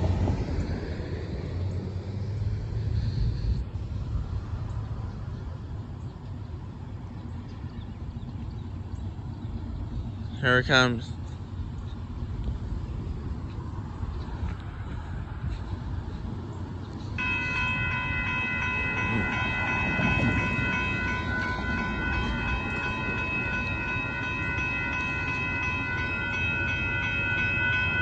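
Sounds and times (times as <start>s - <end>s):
train rumbling: 0.0s - 28.0s
locomotive air horn chord: 17.2s - 28.0s.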